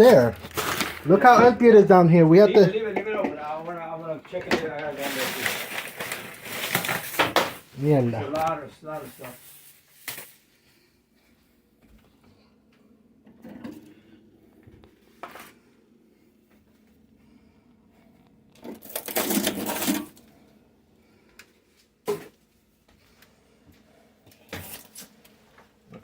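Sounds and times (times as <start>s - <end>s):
food packages knocking and clattering: 0.0s - 1.9s, 2.7s - 10.4s, 18.6s - 20.2s, 22.0s - 22.4s
packages rustling: 0.0s - 10.8s, 18.6s - 20.2s, 24.3s - 25.4s.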